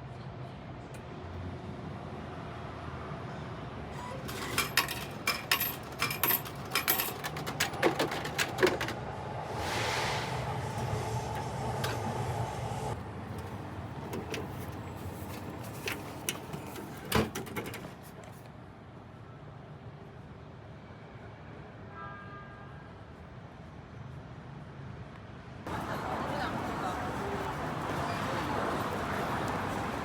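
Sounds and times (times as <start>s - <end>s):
vending machine clicks and clinks: 4.0s - 9.0s, 13.4s - 18.0s
vending machine mechanism whirring: 4.0s - 9.1s.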